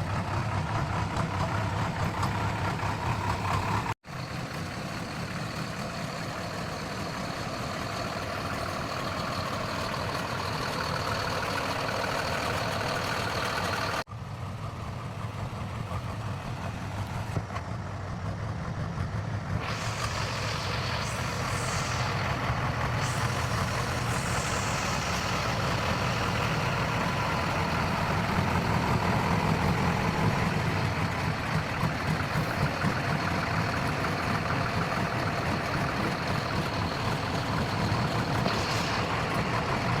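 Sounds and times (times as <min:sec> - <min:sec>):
heavy diesel engines running: 0:00.0 - 0:40.0
thin high whine: 0:19.6 - 0:28.2, 0:37.3 - 0:40.0
high hissing noise: 0:19.6 - 0:30.4, 0:36.2 - 0:40.0.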